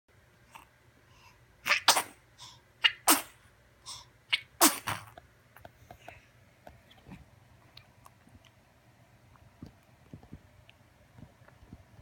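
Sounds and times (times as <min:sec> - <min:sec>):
person sneezing: 0:01.7 - 0:02.2, 0:02.8 - 0:03.4, 0:04.4 - 0:05.1.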